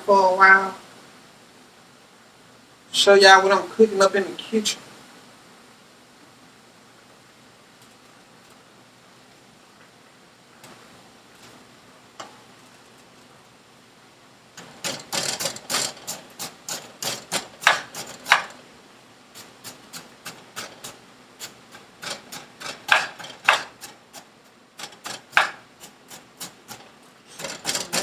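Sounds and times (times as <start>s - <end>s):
utensils knocking on cookware: 14.6s - 18.6s, 22.0s - 24.0s, 24.8s - 25.6s, 26.4s - 28.0s
utensils scraping: 14.6s - 18.6s, 19.4s - 28.0s.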